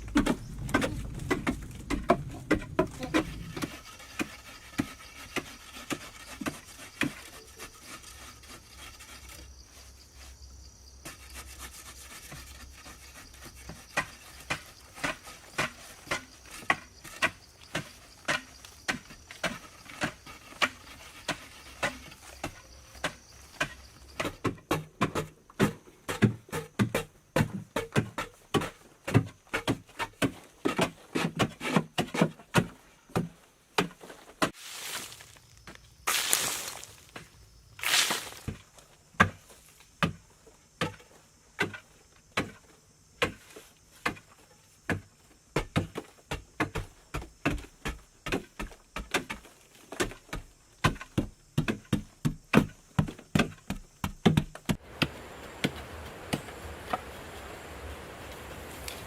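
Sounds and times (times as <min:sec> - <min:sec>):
rustling or scraping: 0:00.0 - 0:24.4, 0:33.9 - 0:39.8, 0:54.7 - 0:59.0.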